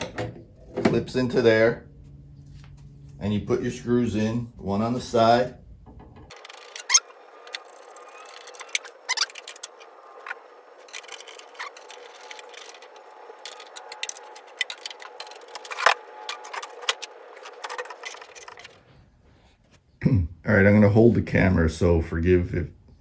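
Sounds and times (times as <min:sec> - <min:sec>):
screwdriver driving screws: 0:06.3 - 0:18.7.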